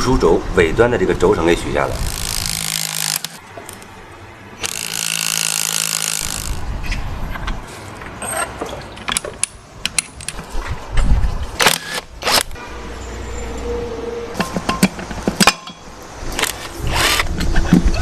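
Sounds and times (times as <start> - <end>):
power tool running: 2.1 - 3.4, 4.6 - 6.6, 11.6 - 12.5, 16.4 - 17.3.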